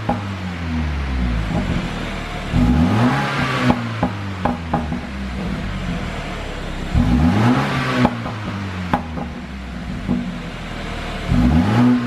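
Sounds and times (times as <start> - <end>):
car engine revving: 0.0 - 12.0
exhaust pops and cracks: 1.1 - 12.0.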